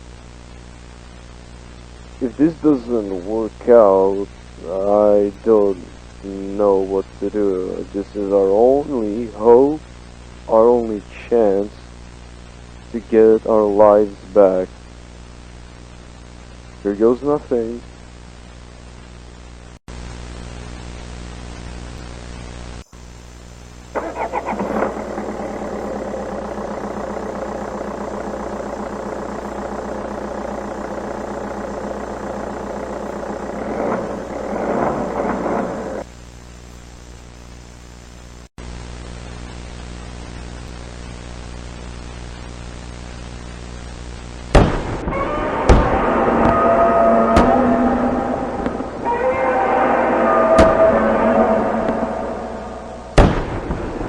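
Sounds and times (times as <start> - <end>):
electrical hum with static: 0.0 - 54.0
motor running: 23.9 - 36.0, 45.0 - 53.6.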